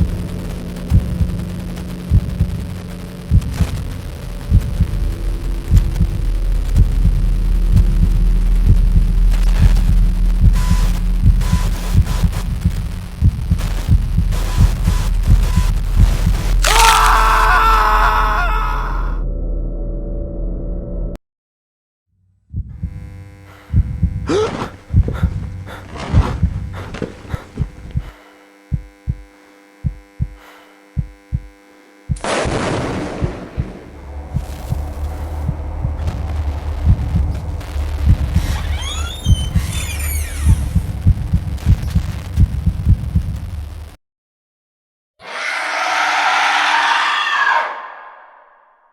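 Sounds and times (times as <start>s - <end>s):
heartbeat thumps: 0.0s - 17.4s, 22.5s - 38.6s, 40.4s - 43.7s
steady low drone: 0.0s - 17.6s, 22.7s - 28.2s, 32.1s - 43.8s
electric hum: 0.0s - 18.8s, 22.7s - 44.0s
loud high cry: 16.6s - 19.2s, 45.2s - 48.5s.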